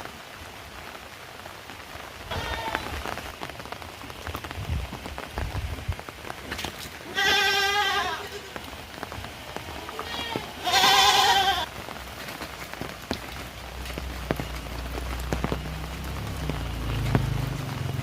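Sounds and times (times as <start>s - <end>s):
heavy rain falling: 0.0s - 18.0s
water drips: 0.7s - 18.0s
animal bleating: 2.3s - 2.9s, 7.1s - 8.5s, 9.9s - 11.7s.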